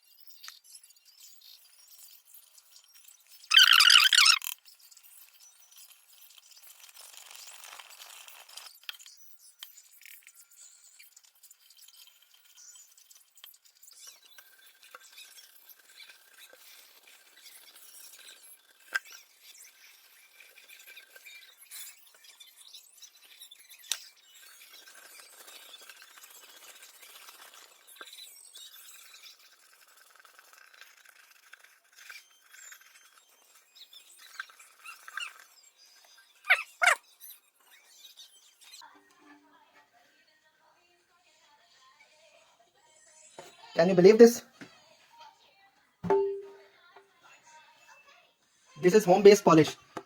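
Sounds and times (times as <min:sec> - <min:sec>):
small ticks: 0:00.0 - 0:36.2
squeaks on glass: 0:00.1 - 0:04.6, 0:31.7 - 0:38.8
scratchy rubbing on glass: 0:00.2 - 0:38.8
loud sharp squeals: 0:03.5 - 0:04.5
sharp glassy clink: 0:46.1 - 0:46.6.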